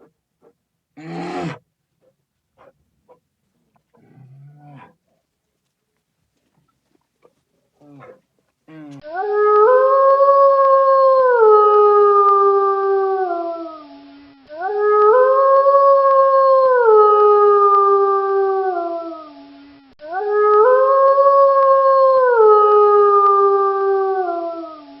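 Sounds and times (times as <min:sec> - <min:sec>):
wolf howling: 0:01.0 - 0:01.6, 0:03.9 - 0:05.0, 0:07.8 - 0:13.6.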